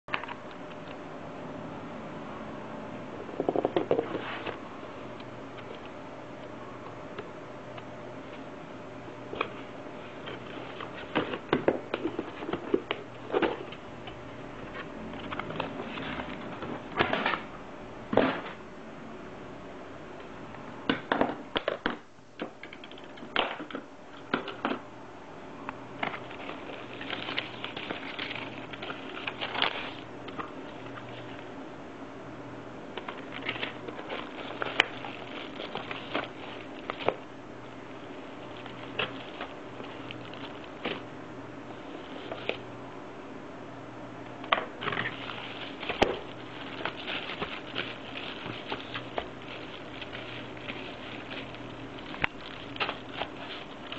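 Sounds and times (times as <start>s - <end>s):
packaging clicks and rustles: 26.0s - 31.5s, 33.0s - 37.3s, 38.1s - 41.0s, 44.4s - 53.9s.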